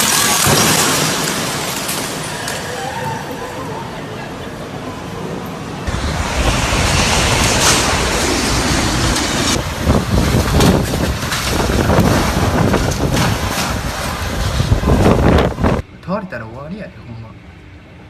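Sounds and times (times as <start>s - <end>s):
strong wind buffeting microphone: 5.7s - 15.9s
knocks and clatters: 9.2s - 15.6s.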